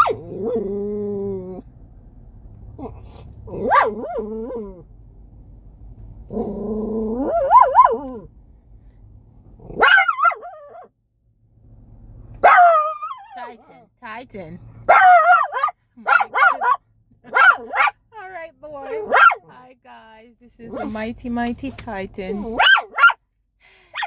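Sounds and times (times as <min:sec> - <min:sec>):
dog barking and whining: 0:00.0 - 0:01.6, 0:02.8 - 0:04.8, 0:06.3 - 0:08.3, 0:09.6 - 0:10.9, 0:12.4 - 0:13.8, 0:14.8 - 0:18.0, 0:18.8 - 0:19.5, 0:22.4 - 0:23.2
dog yelping: 0:00.0 - 0:01.6, 0:02.8 - 0:04.8, 0:07.0 - 0:08.3, 0:09.7 - 0:10.9, 0:12.4 - 0:13.7, 0:14.8 - 0:18.0, 0:18.8 - 0:19.5, 0:22.4 - 0:23.2.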